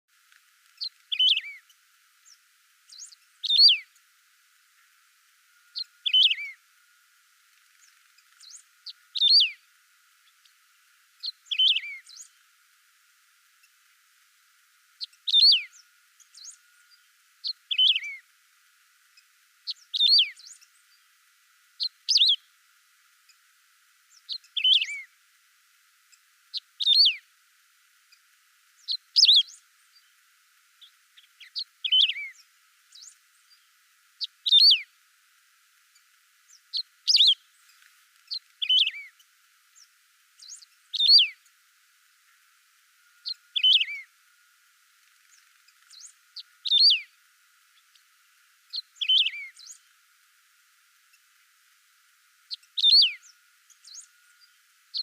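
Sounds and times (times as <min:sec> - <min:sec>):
finch singing high phrases: 0:00.8 - 0:01.6, 0:03.0 - 0:03.9, 0:05.8 - 0:06.6, 0:08.5 - 0:09.6, 0:11.2 - 0:12.2, 0:15.0 - 0:15.8, 0:17.4 - 0:18.2, 0:19.7 - 0:20.5, 0:24.3 - 0:25.1, 0:26.6 - 0:27.2, 0:28.9 - 0:29.6, 0:31.4 - 0:32.3, 0:34.2 - 0:34.9, 0:40.4 - 0:41.4, 0:43.2 - 0:44.0, 0:46.0 - 0:47.1, 0:48.7 - 0:49.8, 0:52.5 - 0:53.3.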